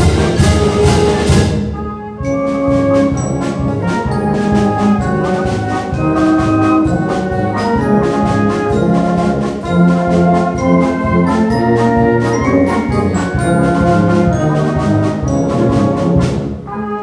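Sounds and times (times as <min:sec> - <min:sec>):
brass ensemble music: 0:00.0 - 0:17.0
steady beat: 0:02.4 - 0:16.6.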